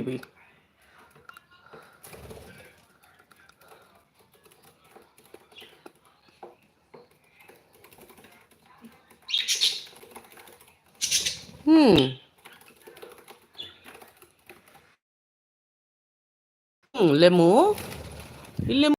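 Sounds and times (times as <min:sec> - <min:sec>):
bird clicks and scratches: 0:00.9 - 0:11.6, 0:12.3 - 0:15.0.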